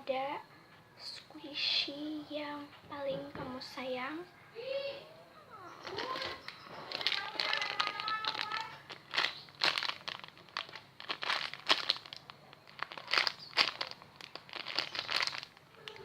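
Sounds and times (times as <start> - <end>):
plastic wrapping crinkling: 5.8 - 16.0.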